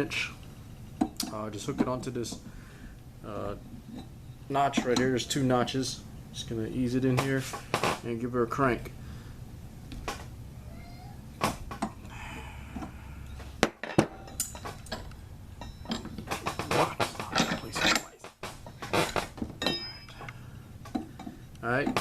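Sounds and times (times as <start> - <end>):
wrench clinking on metal: 13.8 - 22.0.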